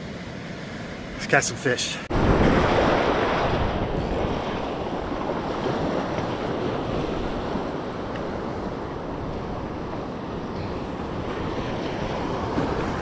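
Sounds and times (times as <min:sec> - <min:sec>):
waves washing up beach: 0:00.0 - 0:13.0
wind buffeting microphone: 0:02.1 - 0:13.0.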